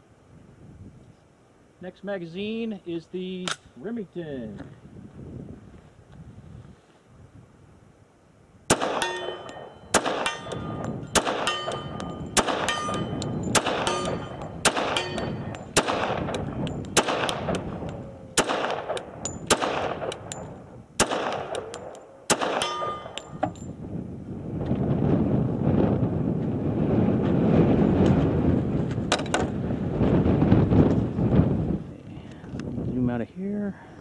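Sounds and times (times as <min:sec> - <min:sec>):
pistol shots with ringing: 0:08.7 - 0:23.7.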